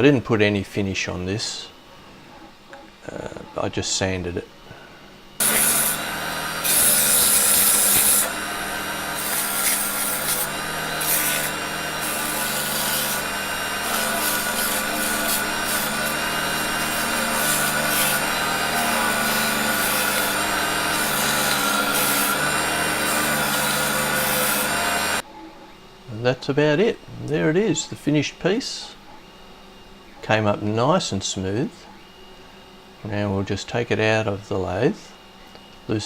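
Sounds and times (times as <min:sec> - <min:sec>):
wood lathe motor humming: 0:05.3 - 0:25.2
sandpaper rasping on spinning wood: 0:05.4 - 0:25.2.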